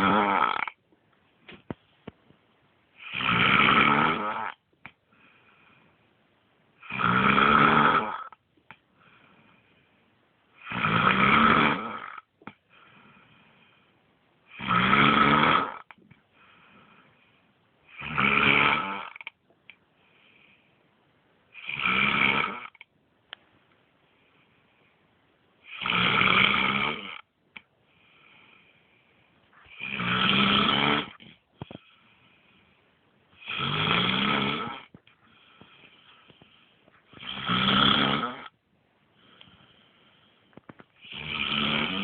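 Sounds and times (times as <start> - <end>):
loud snoring: 0.0 - 0.8, 3.0 - 4.6, 6.8 - 8.4, 10.6 - 12.3, 14.5 - 16.0, 17.9 - 19.3, 21.6 - 22.8, 25.6 - 27.3, 29.7 - 31.4, 33.4 - 35.4, 37.1 - 38.6, 41.0 - 42.0
faint breathing: 5.0 - 6.2, 8.9 - 10.2, 12.6 - 14.1, 16.2 - 17.8, 19.9 - 21.0, 24.0 - 25.2, 27.8 - 30.0, 31.1 - 33.5, 34.9 - 37.4, 39.0 - 41.2.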